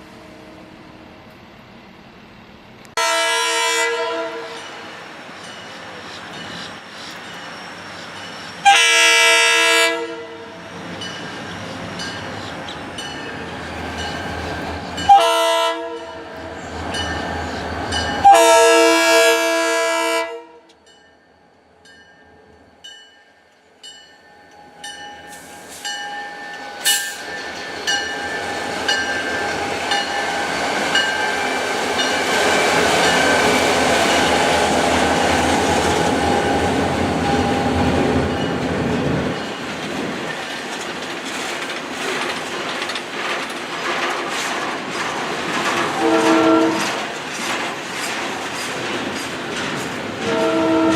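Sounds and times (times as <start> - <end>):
train wheels rolling past: 0.0 - 20.1, 22.4 - 50.9
locomotive air horn blasts: 3.0 - 4.6, 8.6 - 10.5, 15.1 - 16.2, 18.2 - 20.7, 46.0 - 47.0, 50.2 - 50.9.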